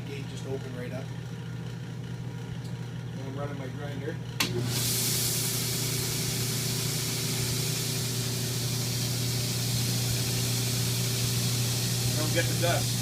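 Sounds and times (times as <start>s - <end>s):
dust extractor running: 0.0s - 13.0s
belt grinder hiss: 4.6s - 13.0s.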